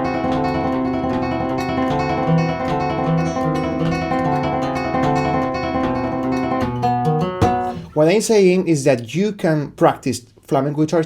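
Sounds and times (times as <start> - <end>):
flamenco guitar arpeggios: 0.0 - 8.0.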